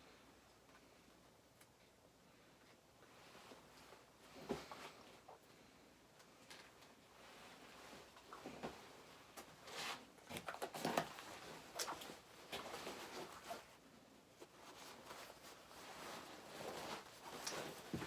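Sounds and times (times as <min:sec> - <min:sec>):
rustling and knocking handling noises: 0:14.4 - 0:18.0.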